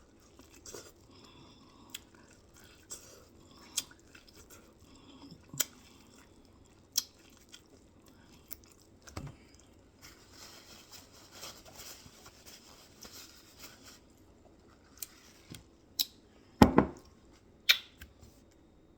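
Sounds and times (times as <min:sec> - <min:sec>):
person chewing and crunching: 0:00.0 - 0:10.6.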